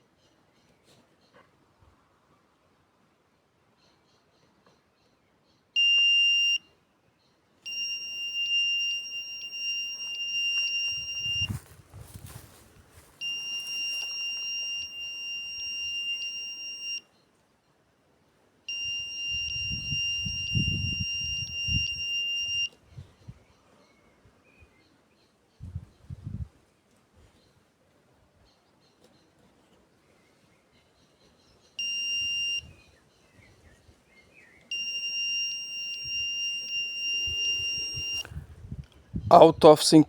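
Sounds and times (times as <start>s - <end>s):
wind rumble on microphone: 10.9s - 13.1s, 19.3s - 22.0s, 22.8s - 23.6s, 25.6s - 26.6s, 37.2s - 39.7s
high-pitched electronic buzzer: 34.8s - 38.2s.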